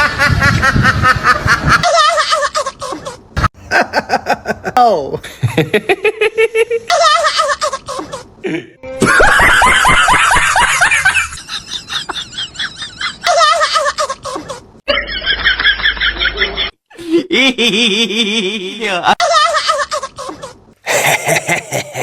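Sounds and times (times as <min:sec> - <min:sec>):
dogs making laugh-like sounds: 0:09.0 - 0:16.7.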